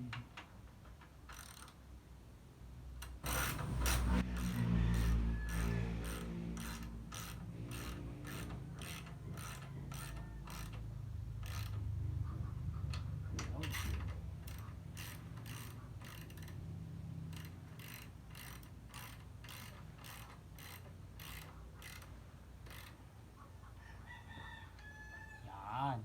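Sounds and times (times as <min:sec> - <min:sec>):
ratchet wrench clicking: 0:01.2 - 0:01.8, 0:03.0 - 0:12.0, 0:12.9 - 0:23.1
rooster crowing: 0:04.1 - 0:06.8, 0:08.8 - 0:10.8, 0:23.7 - 0:25.8.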